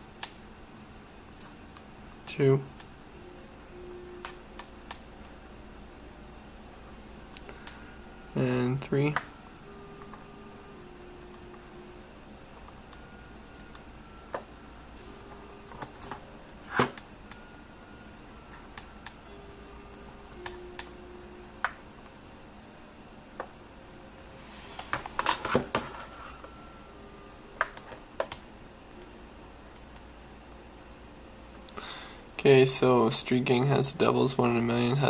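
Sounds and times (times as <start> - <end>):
computer keyboard keystrokes: 19.9 - 20.9, 27.6 - 28.4.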